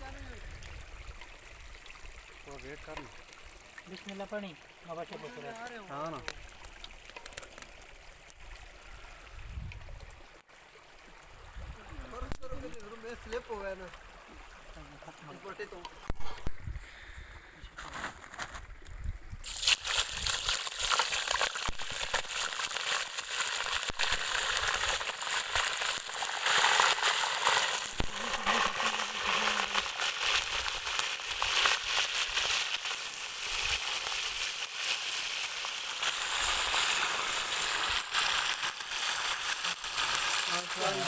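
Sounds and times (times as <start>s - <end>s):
food sizzling in hot oil: 0.0s - 8.8s, 19.4s - 41.0s.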